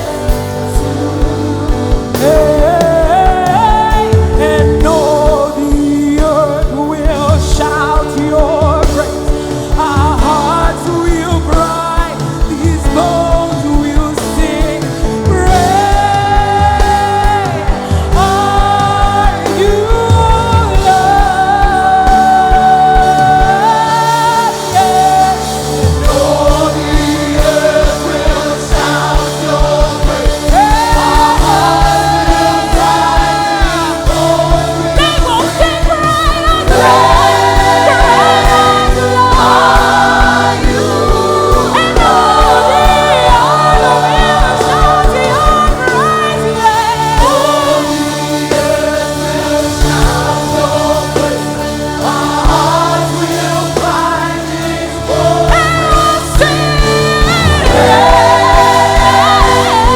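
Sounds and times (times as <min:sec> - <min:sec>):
band with bass: 0:00.0 - 0:59.9
steady drum beat: 0:00.0 - 0:59.9
voices singing long notes: 0:15.4 - 0:59.9.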